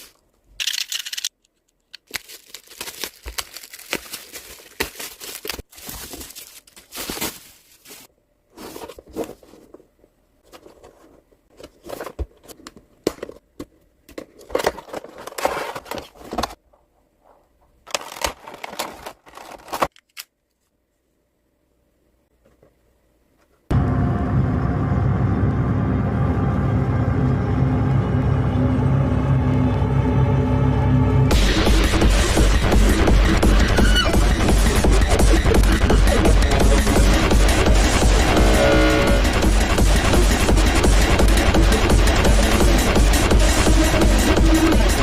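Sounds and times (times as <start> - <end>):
plastic packaging crinkling and tearing: 0.0 - 9.4, 17.8 - 20.3.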